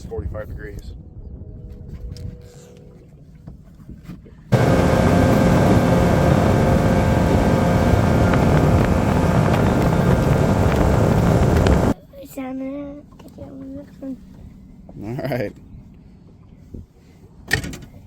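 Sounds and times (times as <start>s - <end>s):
engine running with low rumble: 4.5s - 12.0s.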